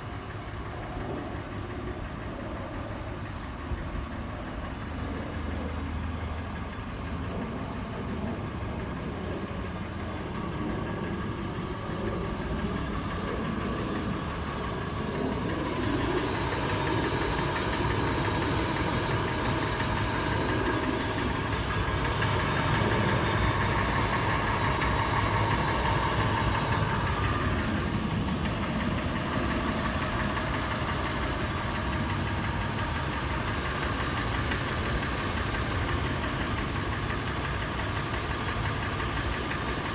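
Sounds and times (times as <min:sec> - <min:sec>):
engine idling: 0:00.0 - 0:39.9
metallic tapping in engine: 0:09.1 - 0:39.9.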